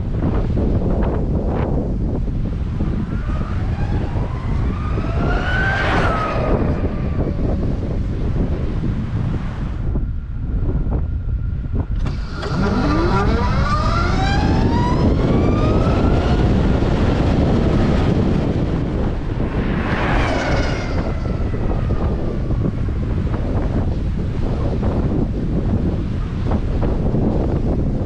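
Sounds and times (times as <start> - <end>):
wind buffeting on microphone: 0.0 - 28.0
electric motorcycle motor whining: 11.8 - 19.4.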